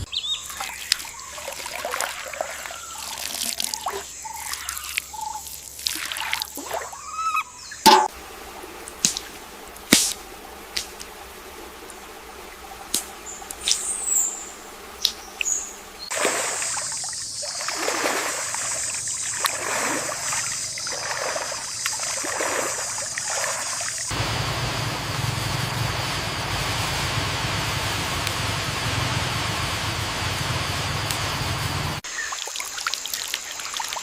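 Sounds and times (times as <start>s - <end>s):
bird chirp: 0.0s - 5.6s, 6.9s - 8.7s, 12.5s - 18.0s
water splashing and trickling: 0.0s - 25.7s, 26.3s - 34.0s
water dripping: 0.2s - 24.2s, 32.0s - 34.0s
stream rushing: 7.9s - 33.9s.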